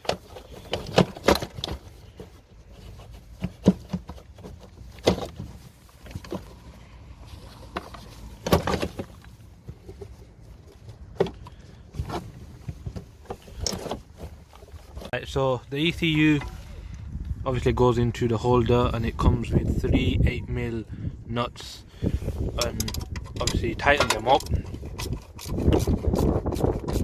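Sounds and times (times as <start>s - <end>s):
plastic parts knocking and clunking: 0.0s - 6.6s, 7.7s - 15.1s, 22.6s - 26.0s
low steady rumble: 1.8s - 27.0s.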